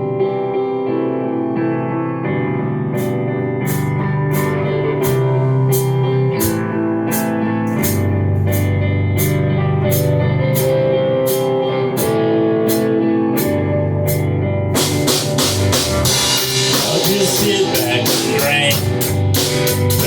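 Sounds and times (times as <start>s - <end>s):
bass guitar: 0.0s - 20.0s
electric guitar chords: 0.0s - 20.0s
cymbal beat: 14.8s - 20.0s.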